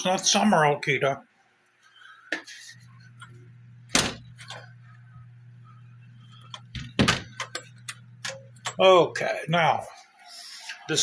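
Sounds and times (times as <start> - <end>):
steady low hum: 2.5 - 10.3.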